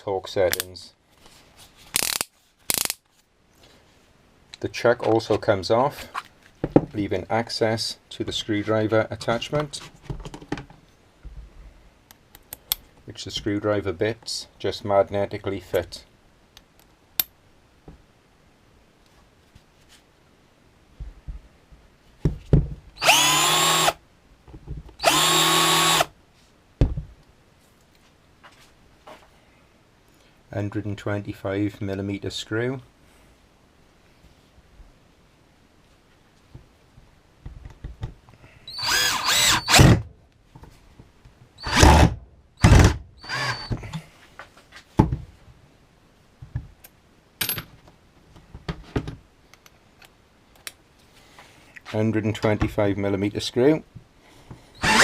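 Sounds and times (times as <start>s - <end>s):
cordless drill motor whining: 23.0s - 24.0s, 25.0s - 26.1s, 38.7s - 40.0s, 41.6s - 42.0s, 42.6s - 43.8s, 54.8s - 55.0s.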